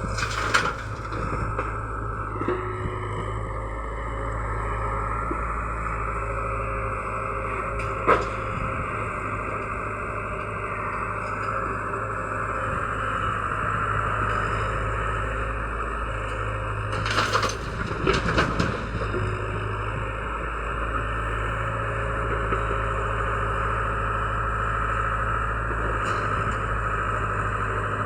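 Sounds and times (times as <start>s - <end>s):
loud knocks and scraping: 0.0s - 1.7s
excavator engine running: 0.0s - 28.0s.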